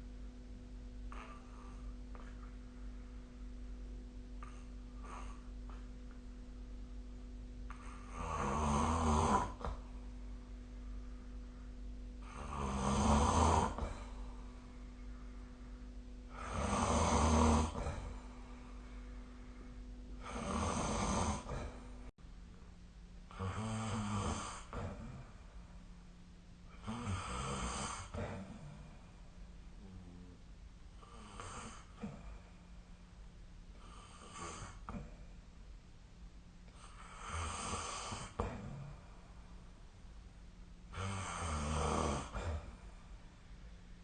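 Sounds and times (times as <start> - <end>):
steady low hum: 0.0 - 44.0
person snoring: 1.1 - 2.5, 4.4 - 6.2, 7.7 - 10.0, 12.2 - 14.8, 16.2 - 22.1, 23.3 - 25.4, 26.7 - 29.0, 29.8 - 30.4, 31.0 - 32.4, 33.8 - 35.1, 36.7 - 39.0, 40.9 - 42.8.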